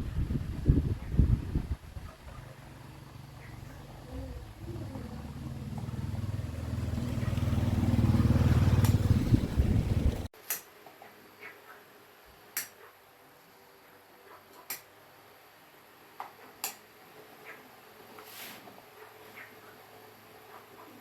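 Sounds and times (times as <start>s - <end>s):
motor humming: 2.5s - 10.3s.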